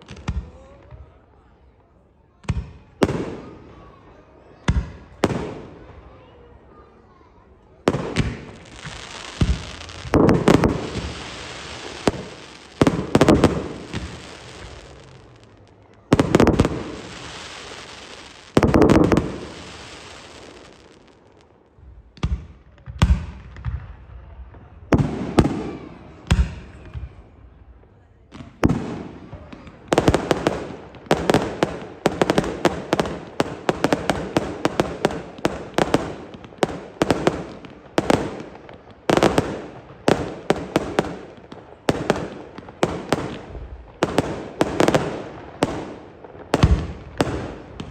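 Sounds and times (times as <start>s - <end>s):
crackling hiss of fireworks: 0.0s - 47.9s
firework shells bursting with bangs: 7.9s - 21.5s.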